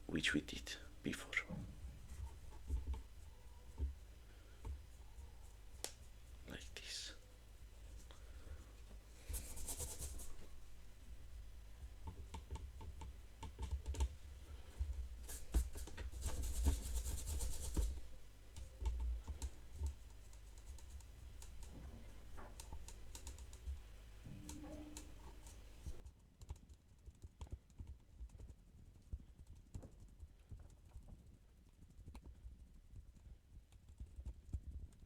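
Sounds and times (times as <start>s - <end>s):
paintbrush scratchy strokes: 1.3s - 11.0s, 14.6s - 23.6s.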